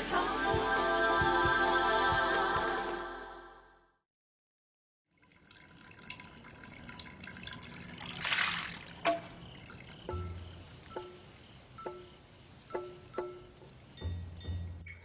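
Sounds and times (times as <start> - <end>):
water trickling: 5.1 - 15.0
water splashing: 5.2 - 14.4.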